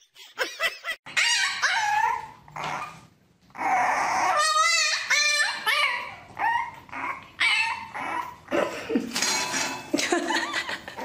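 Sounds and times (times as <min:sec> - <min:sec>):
dog growling and barking: 0:01.2 - 0:08.8.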